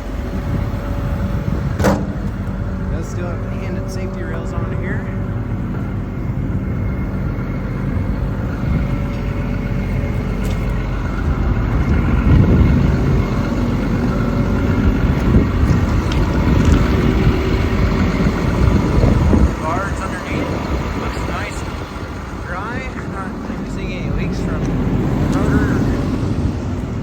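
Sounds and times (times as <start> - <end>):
excavator diesel engine idling: 0.0 - 27.0
uneven low rumble: 0.0 - 27.0.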